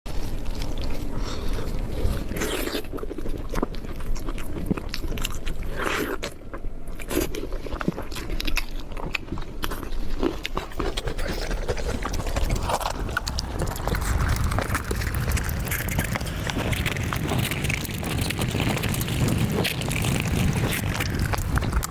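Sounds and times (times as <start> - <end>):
person biting and chewing: 0.1 - 21.9.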